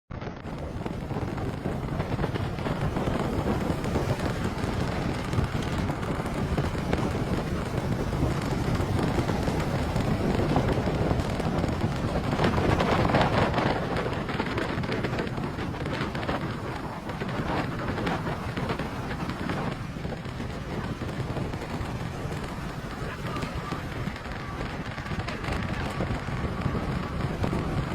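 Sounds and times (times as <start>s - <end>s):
road and wind rumble: 0.1s - 27.9s
rain spatter on car: 0.4s - 17.1s.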